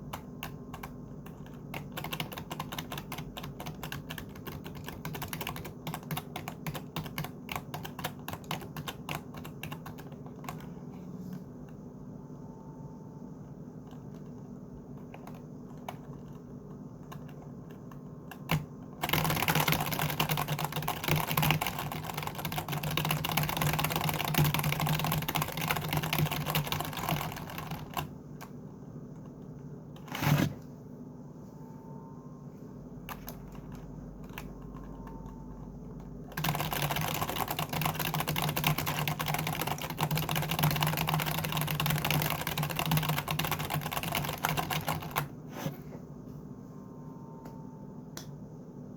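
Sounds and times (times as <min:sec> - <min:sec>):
typing on computer keyboard: 0:00.0 - 0:10.8, 0:13.8 - 0:28.6, 0:33.1 - 0:45.3.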